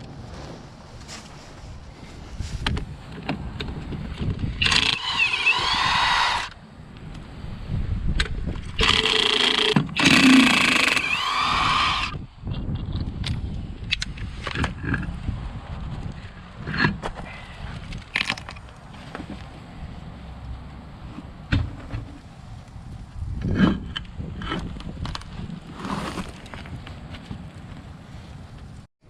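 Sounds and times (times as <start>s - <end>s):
power tool whining: 4.6s - 6.6s, 8.8s - 12.2s.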